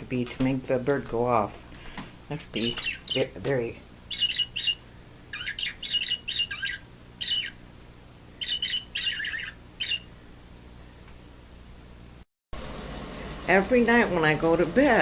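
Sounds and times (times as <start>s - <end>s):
electronic toy bird trilling chirps: 2.6s - 3.4s, 4.1s - 7.6s, 8.4s - 10.1s.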